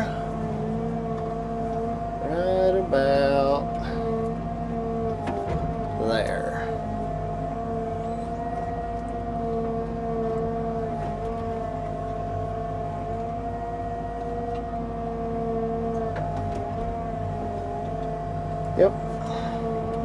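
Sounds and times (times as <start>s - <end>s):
diesel engine hum: 0.0s - 20.0s
high hydraulic whine: 0.0s - 20.0s.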